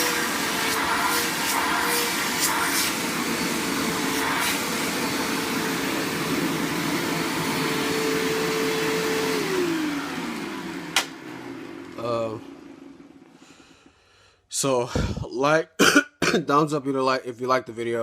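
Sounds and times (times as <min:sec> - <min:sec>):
vacuum cleaner motor whine: 0:00.0 - 0:13.7.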